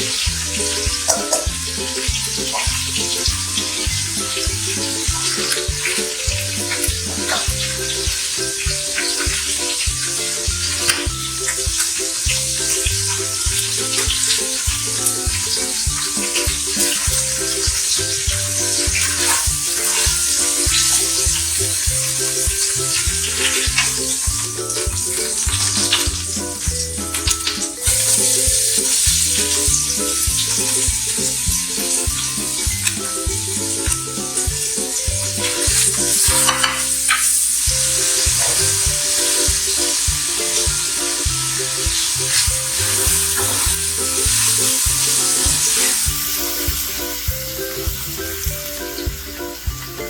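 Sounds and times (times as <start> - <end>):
food sizzling in hot oil: 0.0 - 50.0
upbeat background music: 0.0 - 50.0.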